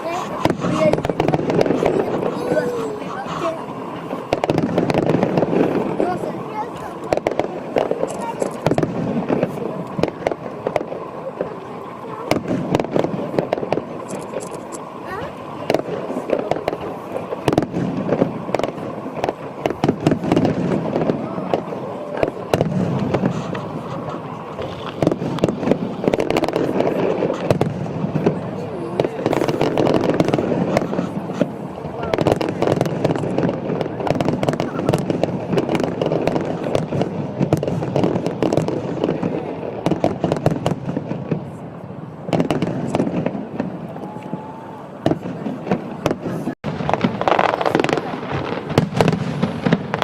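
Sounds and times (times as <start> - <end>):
chatter of voices: 0.0 - 49.8
continuous rumble: 0.0 - 50.0
fireworks bangs and crackles: 0.0 - 50.0.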